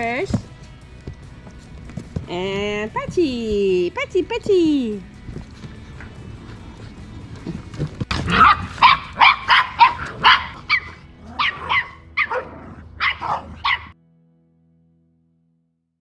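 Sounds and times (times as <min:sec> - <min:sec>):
puppy yapping: 0:07.5 - 0:14.0.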